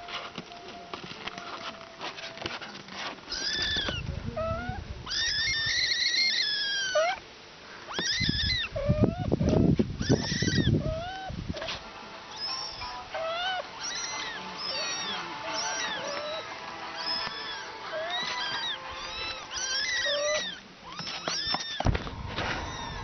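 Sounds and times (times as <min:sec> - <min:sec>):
cat meowing: 0:03.3 - 0:07.2, 0:07.9 - 0:23.0
low rumbling noise: 0:21.8 - 0:23.0.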